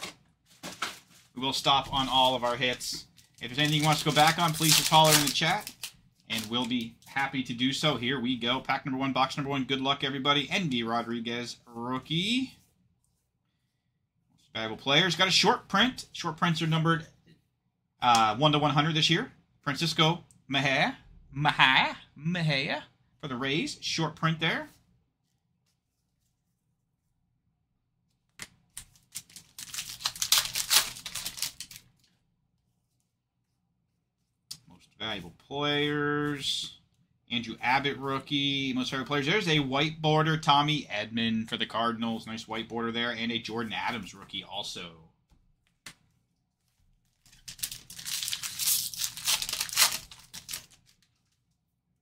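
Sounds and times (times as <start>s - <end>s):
cards being handled: 0.0s - 7.1s, 28.1s - 33.1s, 45.6s - 51.6s
card pack ripping open: 3.2s - 6.8s, 29.0s - 31.8s, 47.3s - 51.0s.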